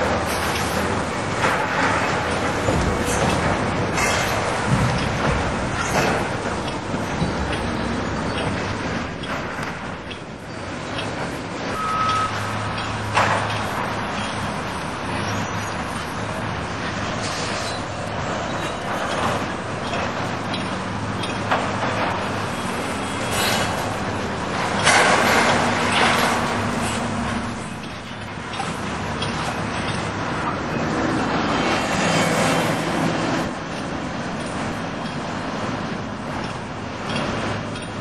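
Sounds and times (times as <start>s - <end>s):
heavy demolition machinery running: 0.0s - 38.0s
short beep: 11.8s - 12.5s.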